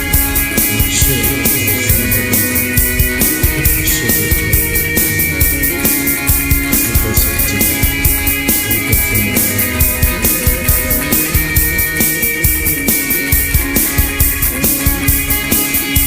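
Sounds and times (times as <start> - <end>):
rock-pop song: 0.0 - 16.0.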